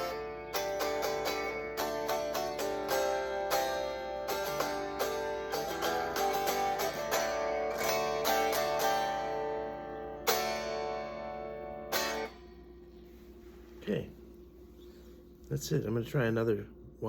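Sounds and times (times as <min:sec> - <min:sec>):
electric guitar picking and strumming: 0:00.0 - 0:13.3.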